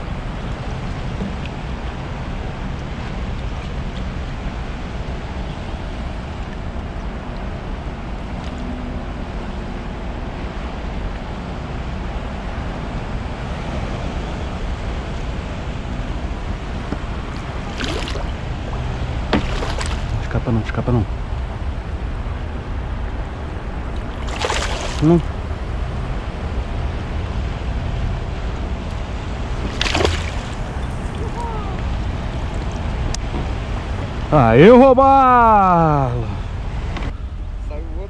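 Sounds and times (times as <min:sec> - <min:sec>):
sea water washing around kayak: 0:15.4 - 0:20.4, 0:23.8 - 0:26.3, 0:29.1 - 0:34.0.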